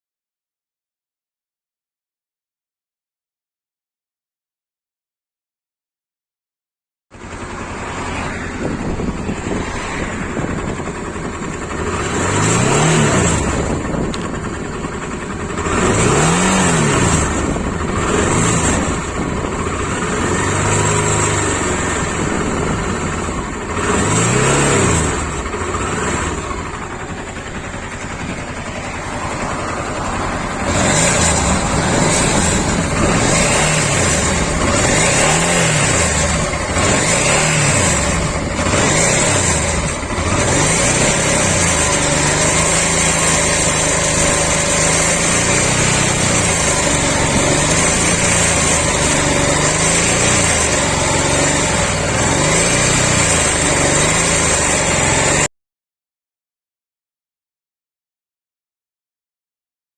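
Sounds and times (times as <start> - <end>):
motorcycle engine revving: 7.1 - 55.5.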